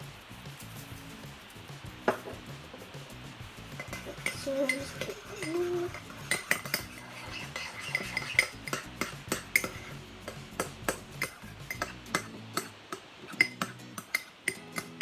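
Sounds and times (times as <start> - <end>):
utensil clinking and scraping bowl: 3.6 - 15.0.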